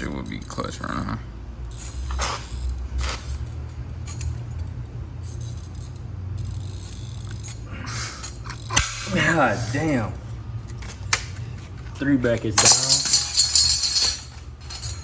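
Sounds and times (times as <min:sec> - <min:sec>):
steady low hum: 0:00.0 - 0:15.0
hand tools clinking on metal: 0:10.6 - 0:15.0.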